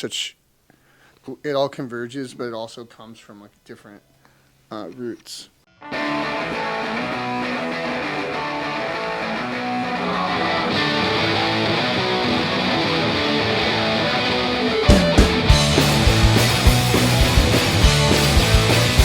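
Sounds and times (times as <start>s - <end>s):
electric guitars strumming chords: 5.8s - 19.0s.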